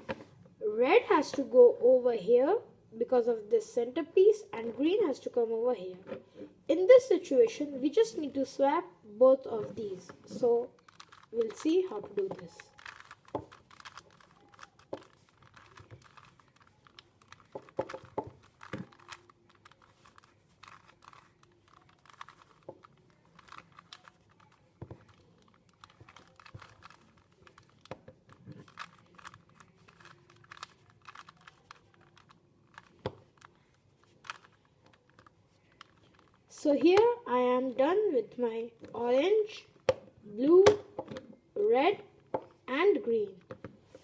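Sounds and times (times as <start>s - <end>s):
plastic puzzle cube clicking: 10.8s - 36.4s.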